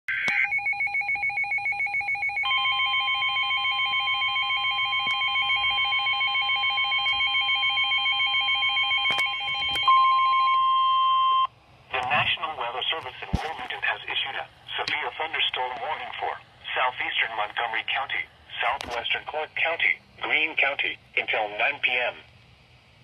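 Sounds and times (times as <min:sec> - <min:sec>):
warbling two-pitch alarm: 0:00.1 - 0:11.5.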